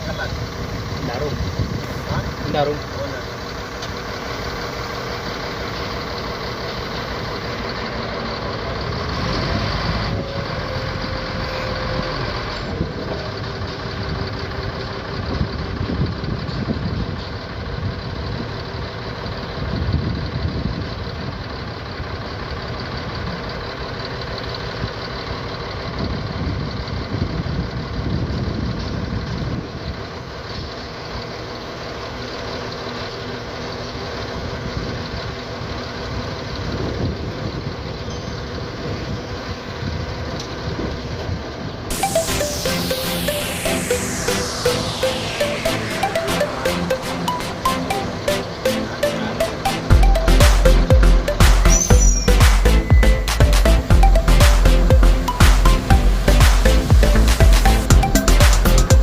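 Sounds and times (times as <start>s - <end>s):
bulldozer diesel engine running: 0.0s - 59.0s
short steady tone: 41.9s - 59.0s.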